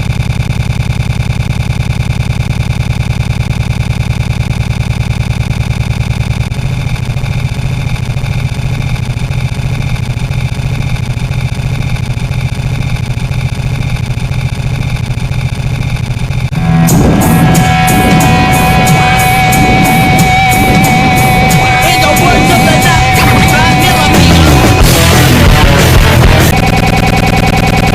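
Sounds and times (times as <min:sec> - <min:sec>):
engine running: 0:00.0 - 0:27.9
heavy metal music: 0:16.5 - 0:27.9.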